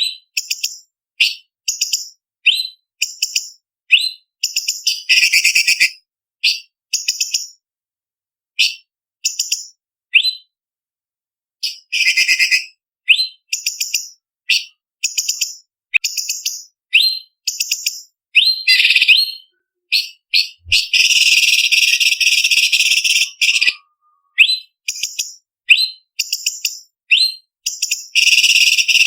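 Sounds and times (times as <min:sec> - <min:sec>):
bird singing chattering and trilling: 0:11.6 - 0:29.0.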